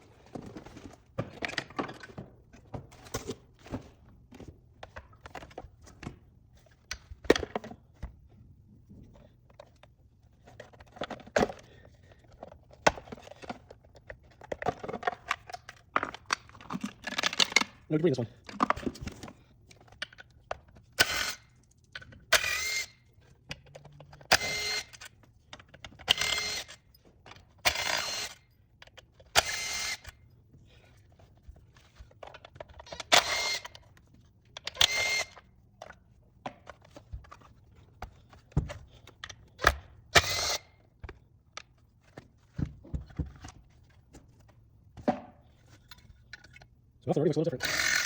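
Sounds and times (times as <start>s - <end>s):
parts clicking and clinking: 9.1s - 46.7s
electric screwdriver whirring: 21.0s - 21.5s, 22.3s - 23.0s, 24.2s - 25.0s, 26.1s - 26.8s, 27.6s - 28.4s, 29.4s - 30.1s, 32.9s - 33.8s, 34.7s - 35.4s, 39.6s - 40.7s, 47.6s - 48.0s.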